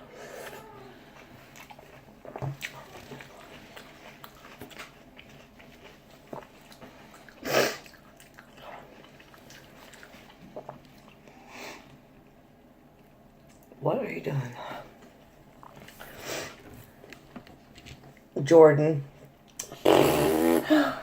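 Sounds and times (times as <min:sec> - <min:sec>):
person chewing: 0:00.3 - 0:11.3.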